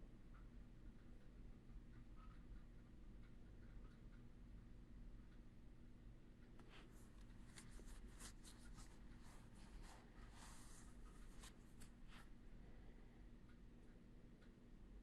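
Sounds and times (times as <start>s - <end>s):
low steady hum: 0.0s - 15.0s
soft scratchy clicks and rustles: 6.4s - 12.5s.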